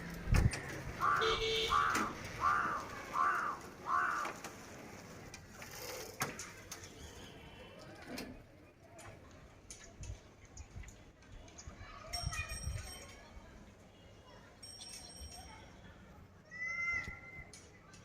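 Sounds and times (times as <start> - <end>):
bird calling: 0.5 - 4.4.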